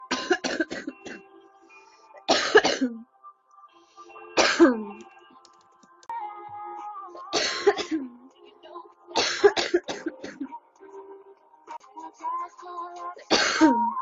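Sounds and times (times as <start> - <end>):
faint music: 0.0 - 14.0
girl coughing: 0.1 - 1.2, 2.3 - 3.0, 4.4 - 5.0, 7.3 - 8.2, 9.2 - 10.5, 13.3 - 14.0.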